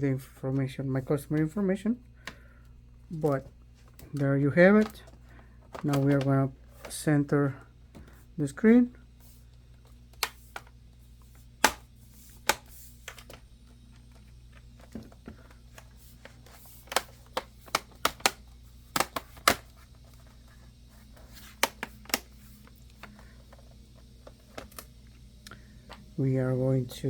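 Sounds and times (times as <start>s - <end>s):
plastic screen panel clicks and taps: 16.9s - 18.4s.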